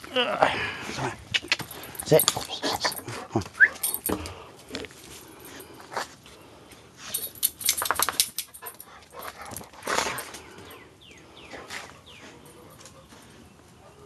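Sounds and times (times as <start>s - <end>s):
dog playing clicks and rattles: 7.0s - 10.3s.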